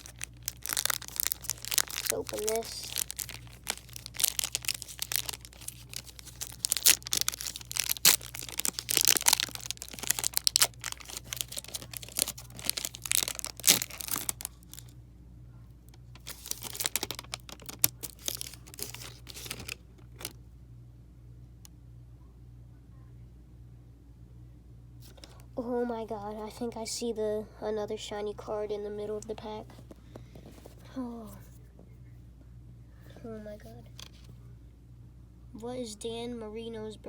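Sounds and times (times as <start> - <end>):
foil wrapper crinkling: 0.0 - 14.9, 16.1 - 20.4.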